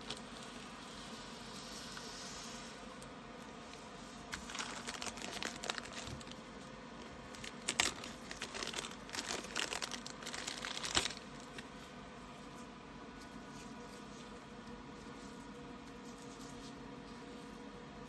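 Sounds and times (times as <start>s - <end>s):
packaging crinkling and rustling: 0.0s - 0.8s, 4.3s - 11.8s.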